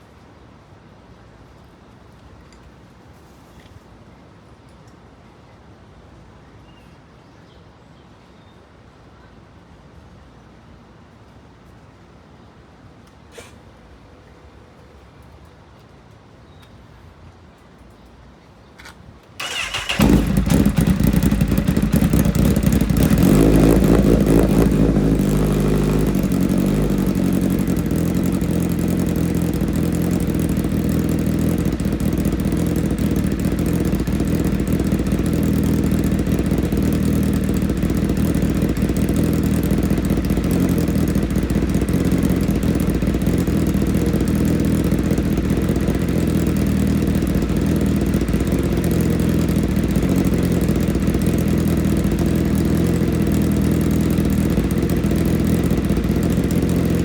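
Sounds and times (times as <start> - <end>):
motorcycle engine starting and idling: 19.4 - 57.0.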